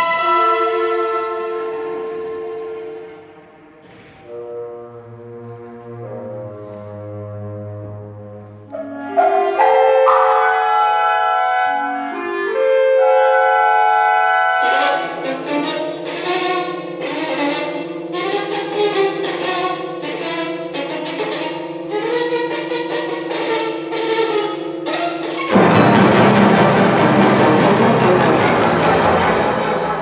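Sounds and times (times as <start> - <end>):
sustained instrumental chords: 1.7 - 30.0
low drone with pulsing notes: 14.0 - 30.0.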